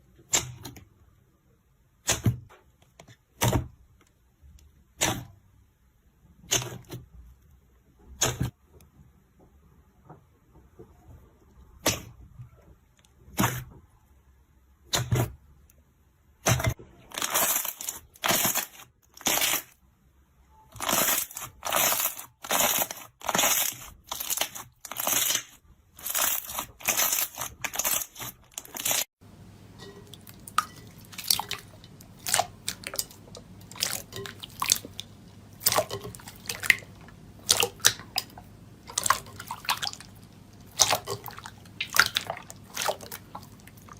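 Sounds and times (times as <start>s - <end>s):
crunchy slime squishes: 16.4s - 19.8s, 20.7s - 29.1s, 30.1s - 43.9s
slime popping: 16.5s - 19.7s, 20.8s - 29.0s
crisp clicks and crackles: 20.8s - 29.1s
faint steady hum: 28.5s - 43.9s.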